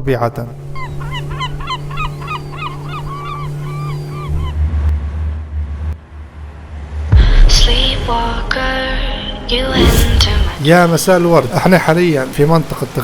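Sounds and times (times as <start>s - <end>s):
steady low drone: 0.0s - 9.0s
chirping melody: 0.5s - 4.8s
deep low rumble: 4.5s - 8.3s
sudden loud hit: 9.7s - 10.6s.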